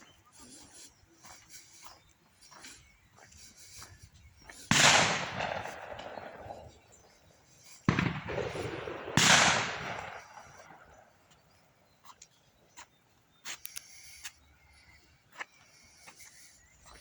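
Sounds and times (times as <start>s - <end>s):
echoing shotgun shots: 4.5s - 11.2s.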